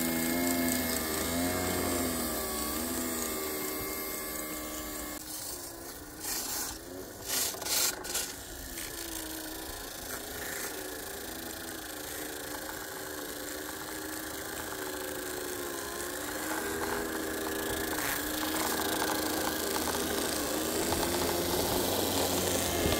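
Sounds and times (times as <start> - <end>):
electric motor hum: 0.0 - 22.9
scraping rasps: 0.0 - 22.9
brush rubbing along track: 0.9 - 11.4.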